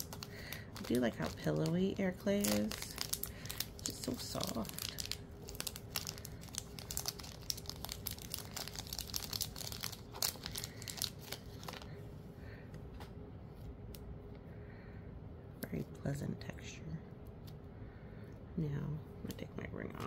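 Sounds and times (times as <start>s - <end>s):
clay crackling in hands: 0.0s - 12.0s.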